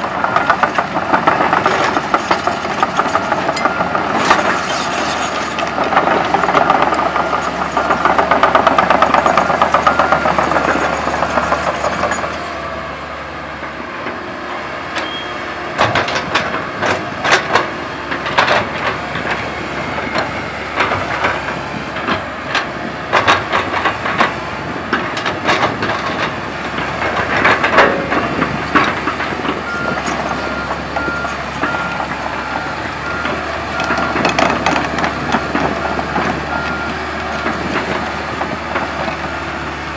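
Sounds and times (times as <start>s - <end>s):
steel tracks clanking: 0.0s - 12.7s, 14.0s - 39.9s
excavator engine running: 0.0s - 39.9s.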